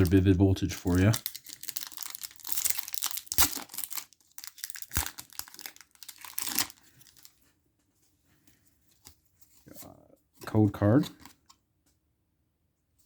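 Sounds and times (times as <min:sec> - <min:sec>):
foil wrapper crinkling and tearing: 0:00.0 - 0:07.4.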